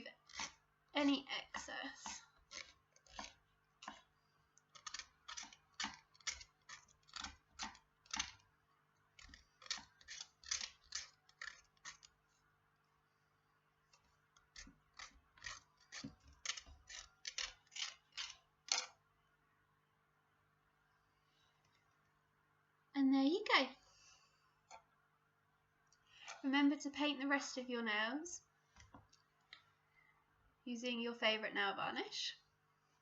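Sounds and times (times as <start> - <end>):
nail file scraping fingernail: 9.2 - 12.1, 14.6 - 18.9.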